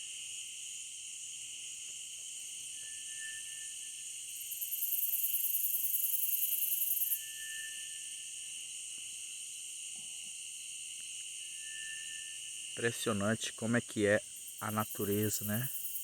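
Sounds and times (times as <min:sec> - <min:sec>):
insects buzzing and chirring: 0:00.0 - 0:16.0
insect rapid high trill: 0:02.4 - 0:08.7, 0:11.4 - 0:16.0
faint thin whistled note: 0:02.6 - 0:04.0, 0:06.8 - 0:08.3, 0:11.4 - 0:12.6.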